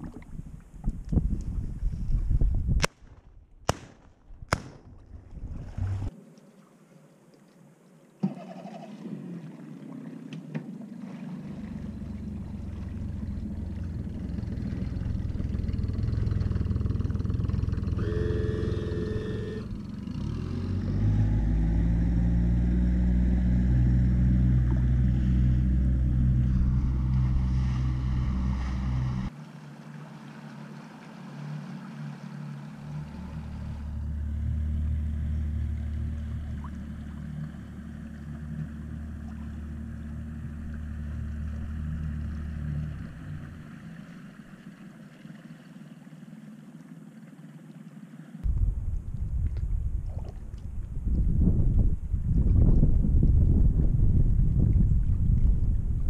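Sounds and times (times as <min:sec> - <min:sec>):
boat motor running: 0:11.4 - 0:45.6.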